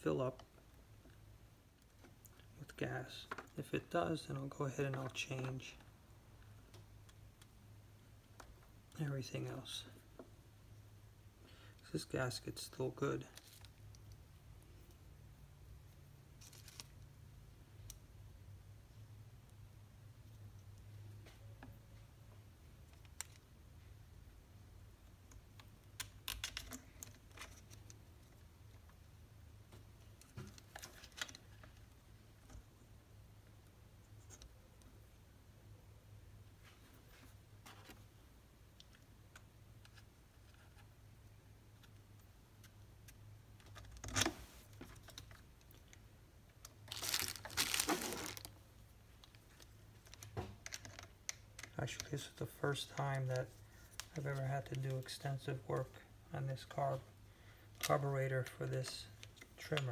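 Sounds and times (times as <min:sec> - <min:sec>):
small parts clicking and tapping: 0:25.3 - 0:29.0, 0:49.2 - 0:52.1
packaging crinkling: 0:46.7 - 0:48.5.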